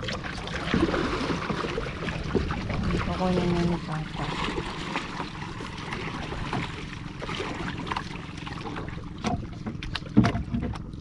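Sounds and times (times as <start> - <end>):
water splashing against boat: 0.0 - 11.0
boat and gear knocks: 9.2 - 11.0.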